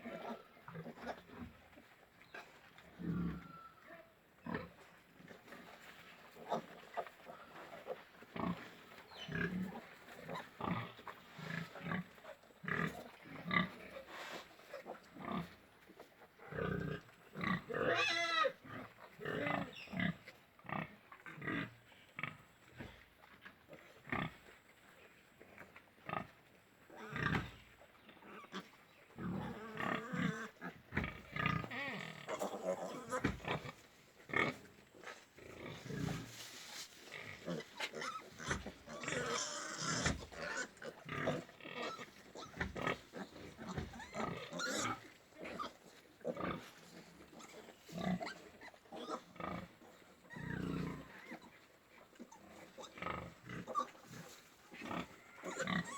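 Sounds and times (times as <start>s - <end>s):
pigs grunting: 0.0s - 3.7s, 4.4s - 24.7s, 25.5s - 55.9s
pig squealing: 17.8s - 18.6s, 37.5s - 45.8s, 55.2s - 55.9s.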